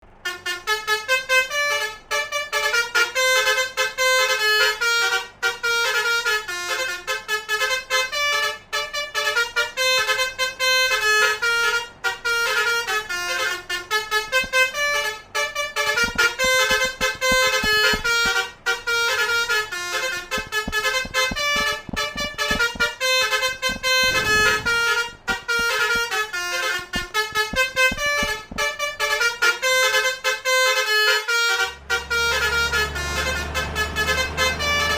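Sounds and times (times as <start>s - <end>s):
multi-tone bus horn tune: 0.0s - 34.9s
low thumps: 14.2s - 29.5s.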